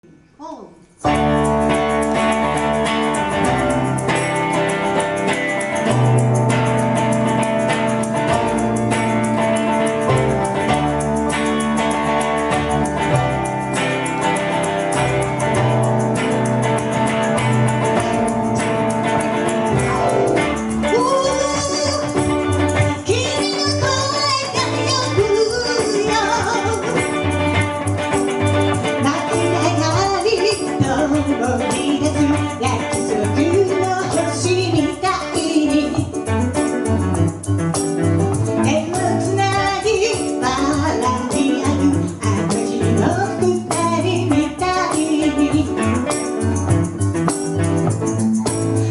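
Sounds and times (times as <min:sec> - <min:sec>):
live guitar-led song: 0:00.8 - 0:48.9
light steady percussion: 0:01.0 - 0:48.9
bass line: 0:01.1 - 0:48.9
person singing: 0:20.8 - 0:27.4, 0:38.7 - 0:46.3.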